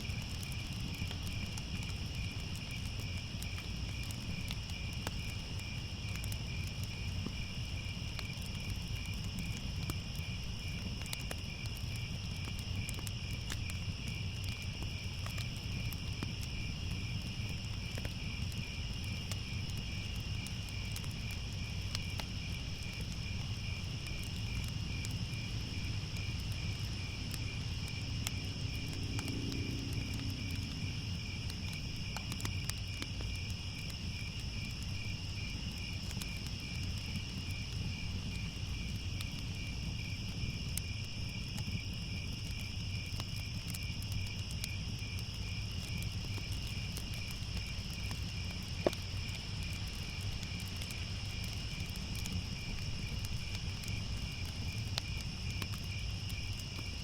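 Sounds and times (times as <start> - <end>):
crickets chirping: 0.0 - 57.0
fire crackling: 0.0 - 57.0.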